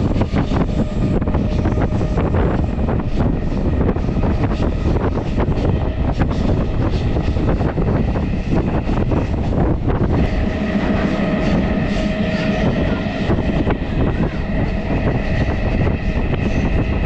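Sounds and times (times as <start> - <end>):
electric train rumbling: 0.0 - 17.0.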